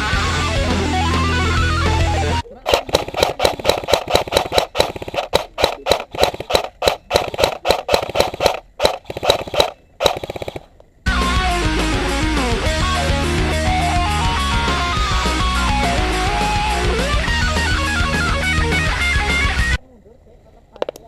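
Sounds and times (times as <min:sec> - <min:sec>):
airsoft guns firing: 0:02.6 - 0:10.8.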